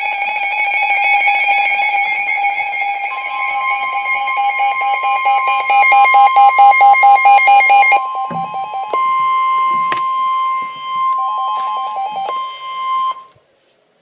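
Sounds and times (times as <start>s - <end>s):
steady high tone: 0.6s - 13.4s
fast electronic beeping: 3.1s - 13.2s.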